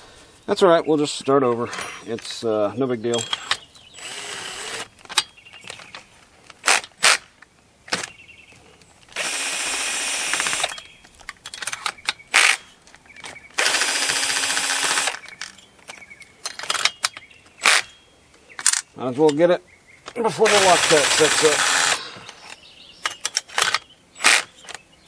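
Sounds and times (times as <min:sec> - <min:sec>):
tool handling clicks and knocks: 0:01.6 - 0:03.9, 0:05.0 - 0:09.3, 0:10.3 - 0:13.7, 0:14.8 - 0:18.0, 0:18.6 - 0:19.4, 0:21.8 - 0:24.9
power drill running: 0:04.0 - 0:04.9, 0:09.2 - 0:10.7, 0:13.6 - 0:15.2, 0:20.4 - 0:22.0.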